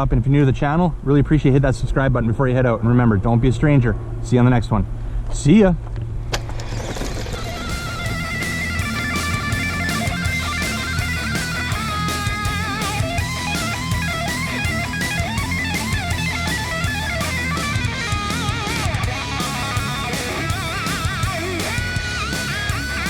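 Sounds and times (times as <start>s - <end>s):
rock music with electric guitar: 6.9s - 23.0s
drum kit beat: 7.4s - 23.0s.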